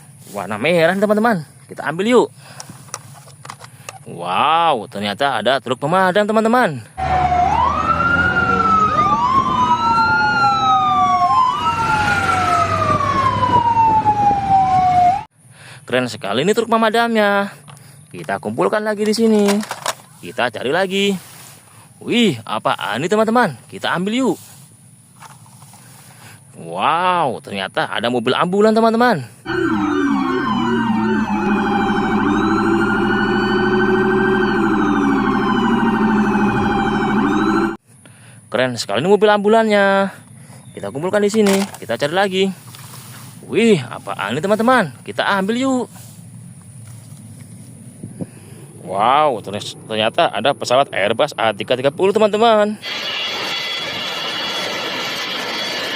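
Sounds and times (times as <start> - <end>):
fire engine siren wailing: 7.0 - 15.3, 29.5 - 37.8, 52.8 - 55.9.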